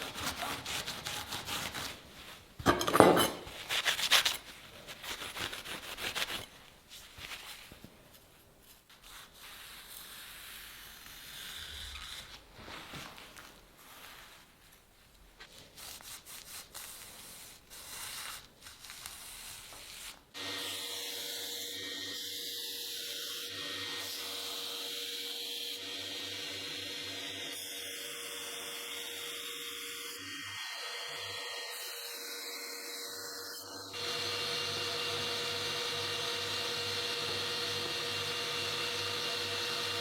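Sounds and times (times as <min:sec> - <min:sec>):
power tool running: 0:23.5 - 0:40.0.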